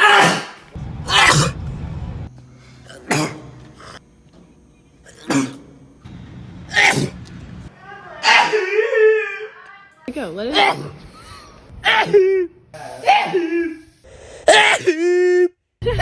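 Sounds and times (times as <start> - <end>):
sharp sneezes: 2.9 - 3.5, 11.8 - 13.8.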